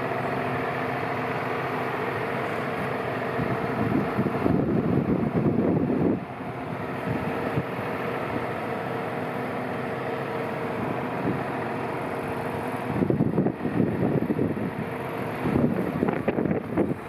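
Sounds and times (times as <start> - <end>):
tractor engine running: 0.0 - 17.0
wind buffeting microphone: 3.4 - 7.8, 12.8 - 17.0.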